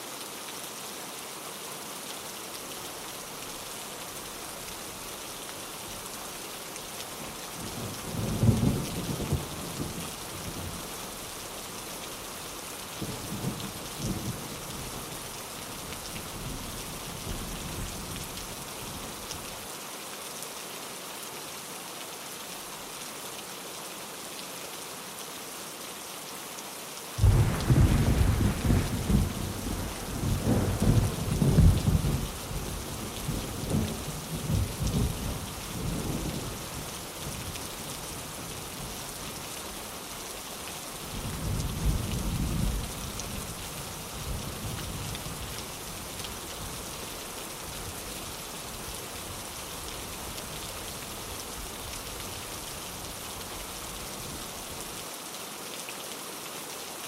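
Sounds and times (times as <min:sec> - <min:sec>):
steady rain: 0:00.0 - 0:57.0
rolling thunder: 0:27.2 - 0:32.3.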